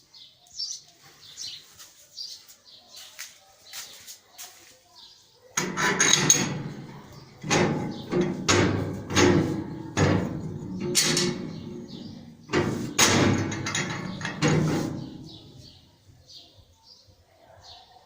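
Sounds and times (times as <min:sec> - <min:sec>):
sharp knocks and bangs: 0:05.6 - 0:15.8.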